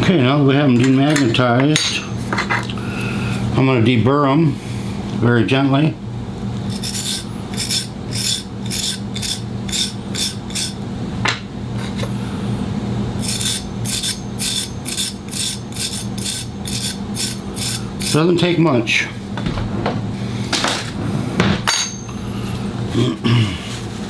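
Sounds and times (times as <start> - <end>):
steady low hum: 0.0 - 24.0
hand rubbing on metal blade: 6.7 - 10.8, 13.2 - 18.3.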